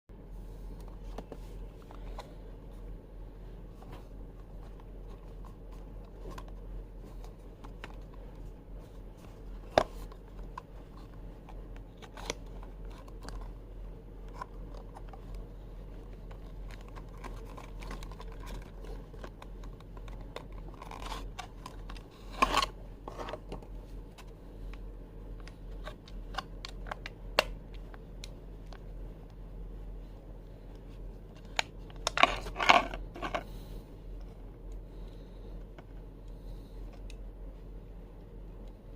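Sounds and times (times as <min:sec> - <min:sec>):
cardboard and plastic packaging rustling: 0:03.7 - 0:13.6, 0:14.2 - 0:24.4.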